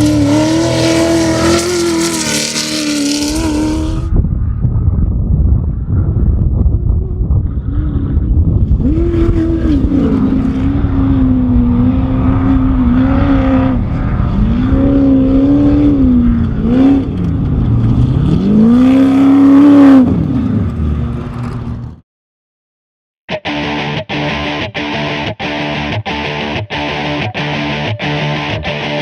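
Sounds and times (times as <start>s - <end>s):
engine revving: 0.0s - 4.1s, 7.4s - 22.0s.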